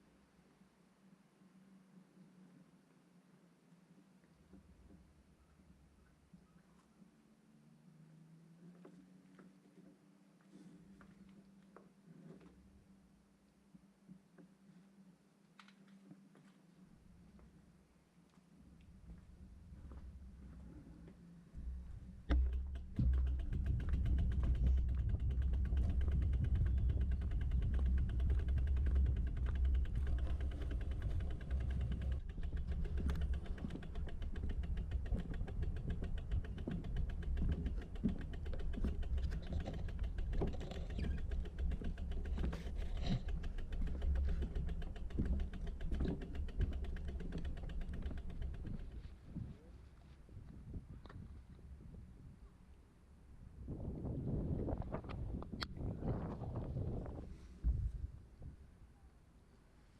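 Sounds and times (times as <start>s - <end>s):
bicycle rattling and creaking: 21.6s - 49.5s
wind and road rumble: 21.6s - 52.5s, 53.4s - 58.8s.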